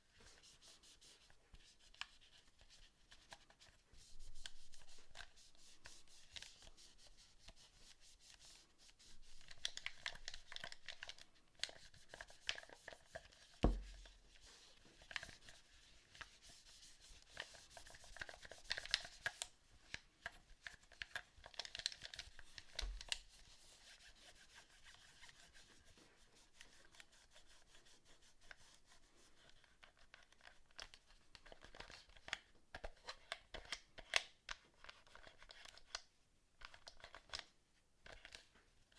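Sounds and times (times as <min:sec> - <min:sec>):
dull thump: 0:13.6 - 0:14.1.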